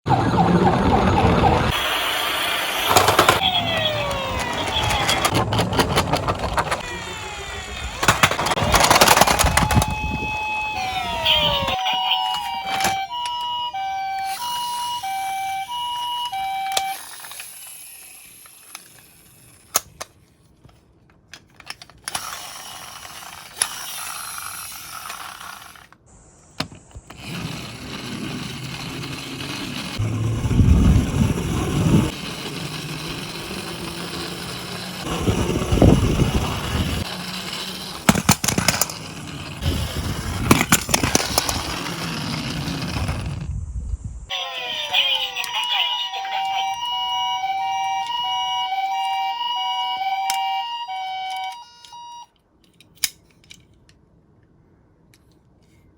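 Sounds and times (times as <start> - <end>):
toy two-tone siren: 0.1 - 5.4, 6.8 - 19.4, 27.2 - 30.0, 31.6 - 38.8, 44.3 - 52.4
plastic toys clicking and rattling: 2.9 - 6.9, 7.9 - 10.0, 16.1 - 26.0, 27.0 - 30.0, 32.1 - 43.5
low rumbling: 30.0 - 32.1.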